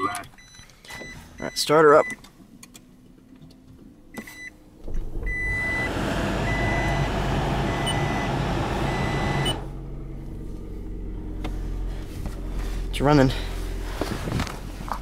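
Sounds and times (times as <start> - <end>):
in-car warning beep: 0.0 - 2.2, 4.1 - 4.6, 5.2 - 9.7
car engine humming: 2.3 - 15.0.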